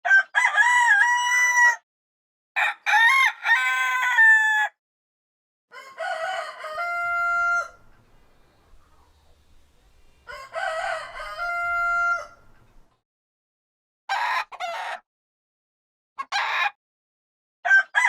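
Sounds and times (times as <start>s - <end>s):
rooster crowing: 0.0s - 1.8s, 2.6s - 4.8s, 5.7s - 12.8s, 17.6s - 18.0s.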